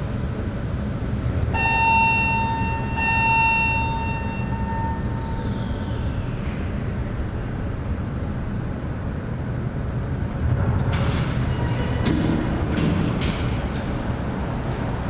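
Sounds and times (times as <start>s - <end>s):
distant city traffic rumble: 0.0s - 15.0s
distant horn: 1.6s - 5.8s.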